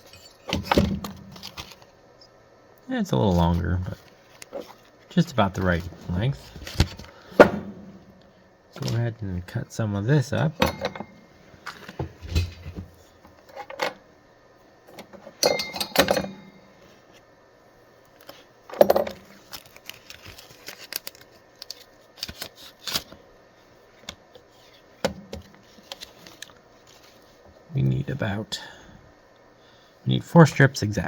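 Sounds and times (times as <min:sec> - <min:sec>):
tools handled on a workbench: 0:10.6 - 0:14.0, 0:14.9 - 0:16.6, 0:18.2 - 0:19.6
metallic clatters: 0:15.4 - 0:16.6.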